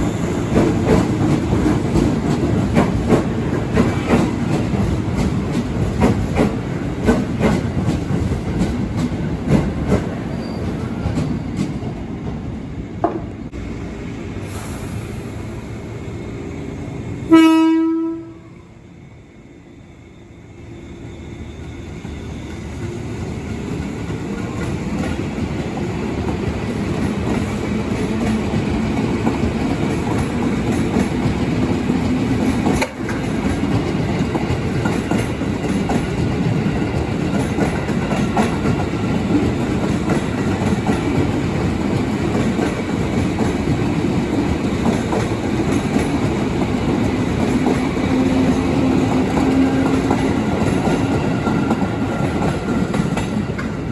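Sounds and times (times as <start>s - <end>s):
train rumble and wheel clatter: 0.0s - 53.9s
train horn blast: 17.3s - 18.6s, 48.1s - 50.5s.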